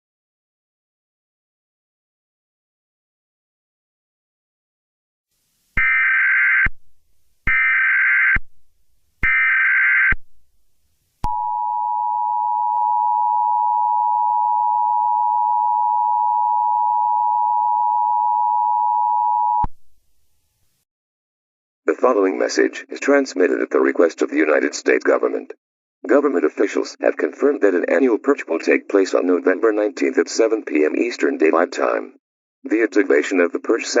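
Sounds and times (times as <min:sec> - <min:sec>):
data tone bursts: 0:11.3 - 0:19.7
two-tone attention signal: 0:11.3 - 0:19.7.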